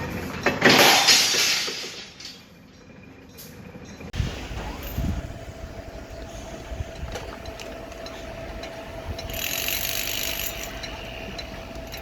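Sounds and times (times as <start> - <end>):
machinery rumble and whine: 2.7 - 12.0.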